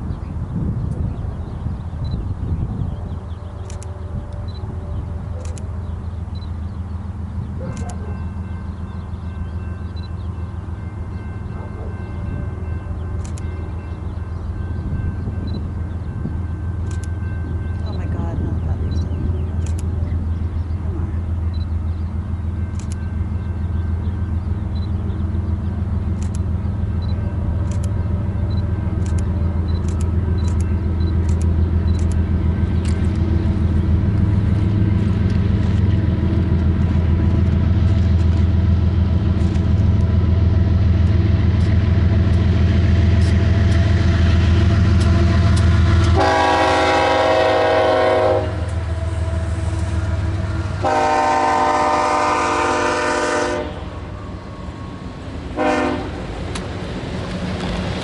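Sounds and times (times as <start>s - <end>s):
diesel locomotive rumbling: 0.0s - 58.0s
train air horn blasts: 44.4s - 54.4s, 55.6s - 56.3s.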